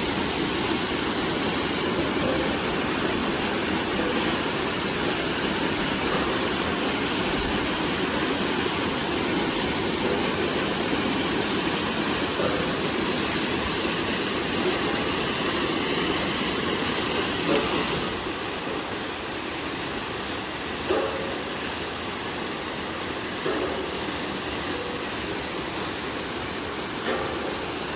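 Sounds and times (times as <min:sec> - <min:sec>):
waterfall rushing: 0:00.0 - 0:20.2.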